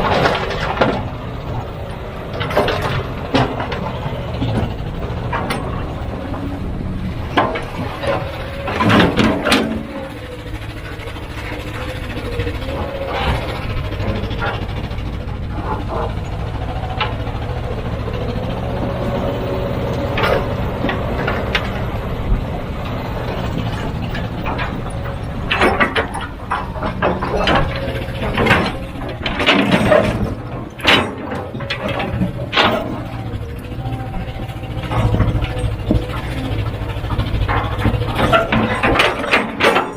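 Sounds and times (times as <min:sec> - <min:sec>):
diesel engine running: 0:00.0 - 0:39.9
loud metal clanks and knocks: 0:00.0 - 0:39.9.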